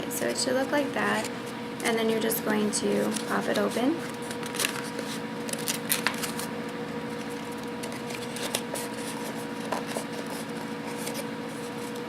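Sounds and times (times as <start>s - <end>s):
steady hum: 0.0s - 12.0s
thick paper crinkling: 3.0s - 6.5s, 7.1s - 12.0s.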